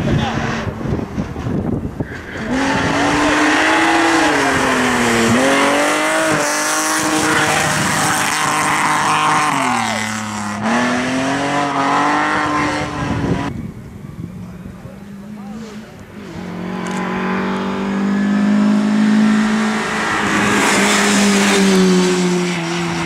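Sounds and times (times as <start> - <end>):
race car engine at high revs: 0.0 - 13.5, 15.3 - 23.0.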